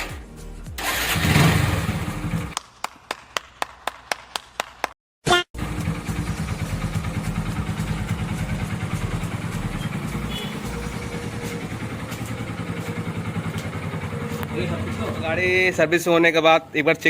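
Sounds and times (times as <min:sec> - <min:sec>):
motorcycle engine idling: 0:05.6 - 0:16.3.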